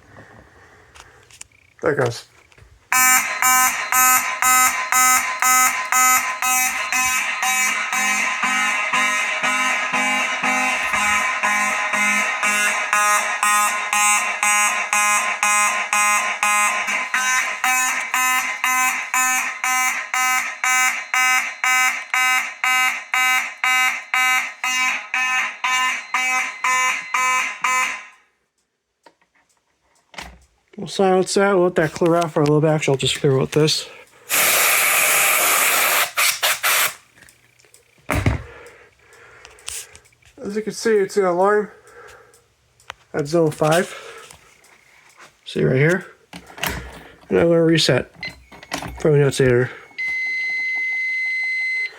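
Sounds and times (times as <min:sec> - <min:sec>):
fire alarm horns blaring: 0:02.9 - 0:28.4, 0:33.6 - 0:37.0, 0:47.7 - 0:51.9.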